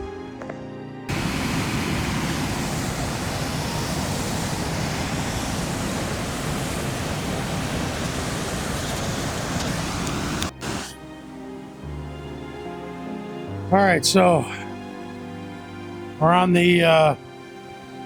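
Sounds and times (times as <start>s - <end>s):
river rushing over rocks: 1.1s - 10.9s.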